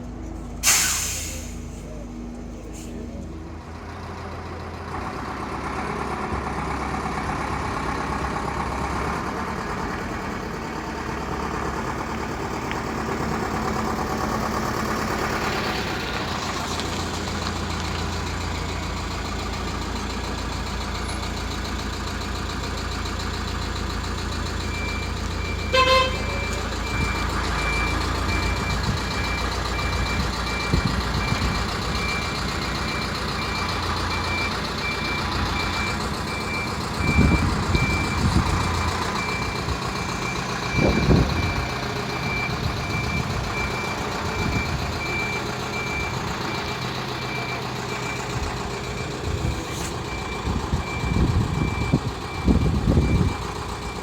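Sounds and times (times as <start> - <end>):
large vehicle engine running: 0.0 - 54.0
reversing alarm beeping: 23.4 - 54.0
horn toot: 25.7 - 26.4.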